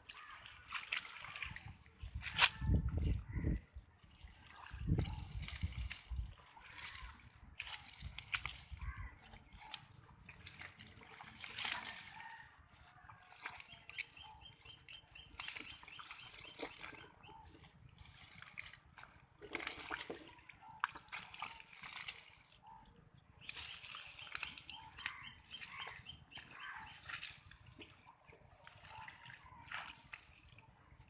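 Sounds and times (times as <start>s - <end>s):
splashing in muddy water: 0.0s - 31.0s
bird chirps: 12.8s - 18.0s, 22.6s - 27.2s.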